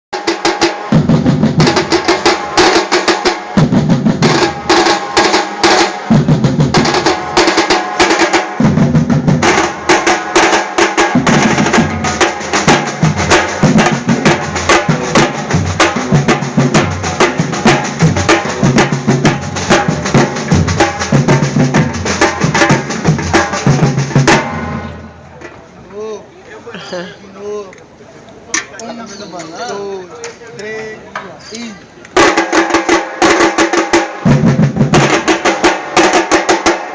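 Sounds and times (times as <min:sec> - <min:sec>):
deep drum beat: 0:00.2 - 0:24.9, 0:32.2 - 0:36.9
fast drum strokes: 0:00.2 - 0:25.0, 0:32.2 - 0:36.9.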